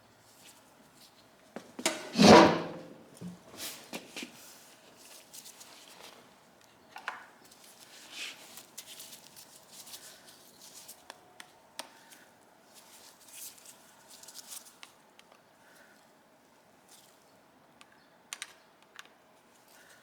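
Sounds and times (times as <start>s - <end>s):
hand tools clicking and scraping: 1.8s - 2.9s.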